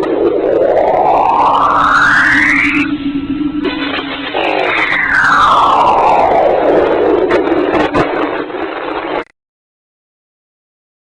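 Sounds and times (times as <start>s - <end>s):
whistle-like tone sweeping down: 0.2s - 7.5s.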